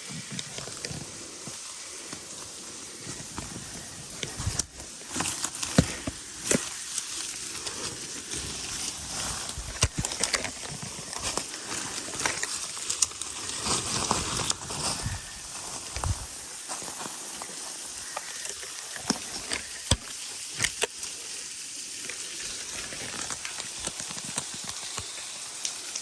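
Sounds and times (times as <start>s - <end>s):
steady hiss: 0.0s - 26.0s
rustling: 0.2s - 18.4s
footsteps crunching and scuffing: 3.0s - 12.6s.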